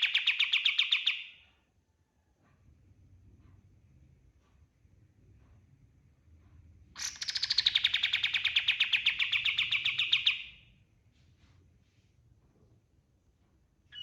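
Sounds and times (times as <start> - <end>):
songbird fast trill: 7.0 - 10.6.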